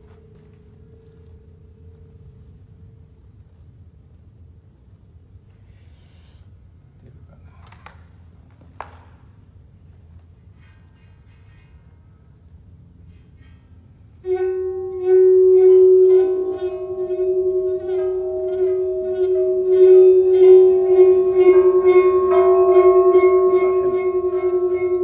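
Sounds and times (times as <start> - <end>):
faint low hum: 0.0 - 25.0
held musical tones pulsing: 14.3 - 25.0.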